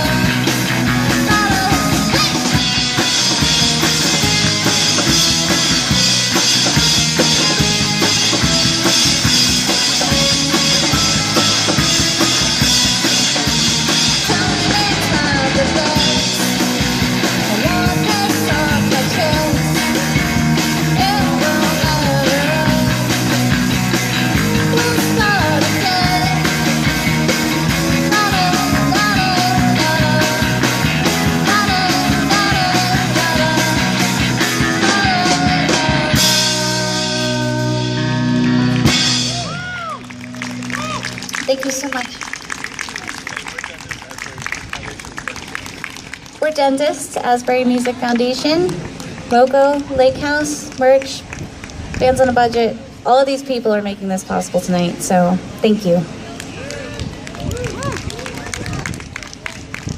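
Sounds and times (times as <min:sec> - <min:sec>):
bass guitar: 0:00.0 - 0:42.0
electric guitar: 0:00.0 - 0:42.6
drums: 0:00.0 - 0:43.3
person singing: 0:14.2 - 0:16.5, 0:20.9 - 0:23.1, 0:28.0 - 0:38.0.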